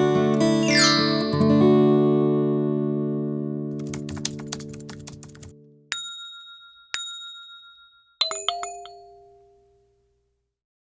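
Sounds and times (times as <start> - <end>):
guitar chord: 0.0 - 3.7
chime notes: 0.6 - 2.0, 5.9 - 9.8
high bell-like dings: 5.9 - 9.9.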